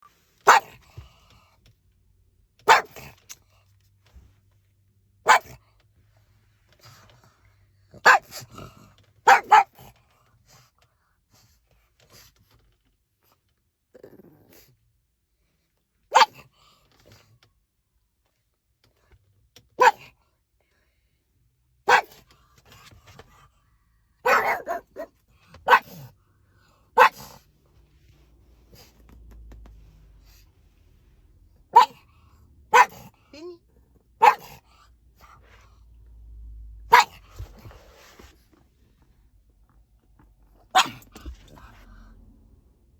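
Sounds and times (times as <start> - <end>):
dog barking: 0.4 - 0.9, 2.6 - 3.2, 5.2 - 5.6, 7.9 - 9.9, 16.1 - 16.4, 19.8 - 20.1, 21.8 - 22.2, 24.2 - 26.1, 26.9 - 27.4, 31.7 - 32.1, 32.7 - 33.2, 34.2 - 35.6, 36.9 - 37.6, 40.7 - 41.6.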